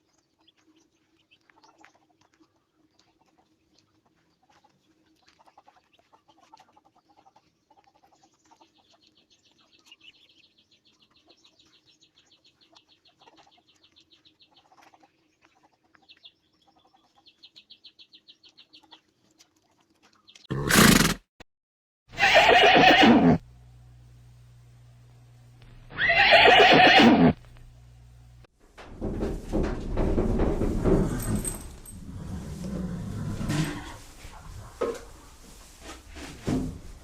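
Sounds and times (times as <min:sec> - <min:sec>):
horse neighing: 0:20.5 - 0:21.2, 0:22.1 - 0:23.4, 0:25.9 - 0:27.4, 0:31.0 - 0:34.3
low hum: 0:23.4 - 0:26.1, 0:27.3 - 0:28.5.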